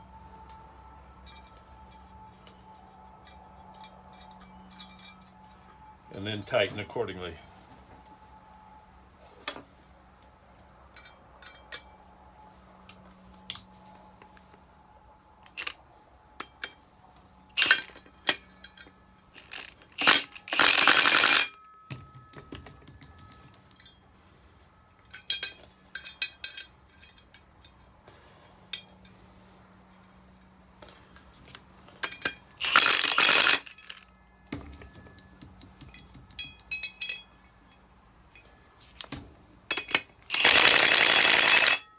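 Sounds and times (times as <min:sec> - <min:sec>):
metal tools clinking: 0:01.2 - 0:07.7, 0:10.9 - 0:12.1, 0:16.4 - 0:30.0, 0:31.8 - 0:41.9
power tool running bolts down: 0:19.4 - 0:21.5, 0:32.6 - 0:34.0, 0:39.9 - 0:41.8.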